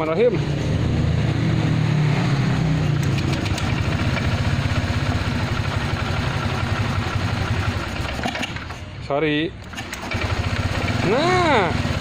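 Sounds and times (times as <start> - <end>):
scooter engine idling: 3.0 - 12.0.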